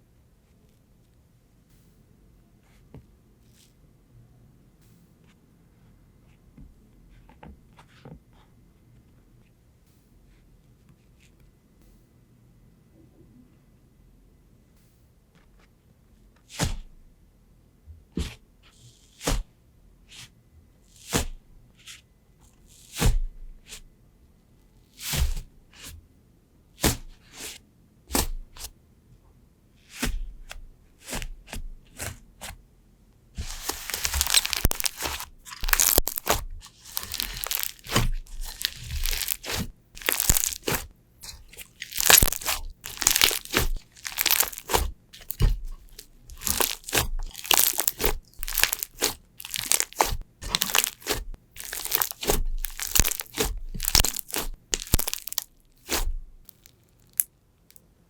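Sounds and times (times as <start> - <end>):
crunching and crackling bursts: 33.4 - 57.8
slime squeezing clicks and pops: 33.9 - 45.6, 46.3 - 57.3.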